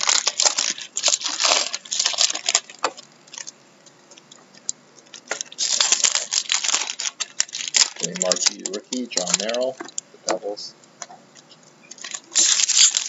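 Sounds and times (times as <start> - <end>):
trading cards shuffling: 5.2 - 10.6.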